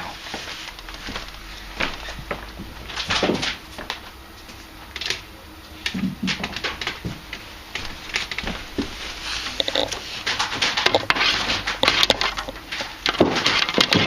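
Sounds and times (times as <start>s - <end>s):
cable rustling and scraping: 0.0s - 14.0s.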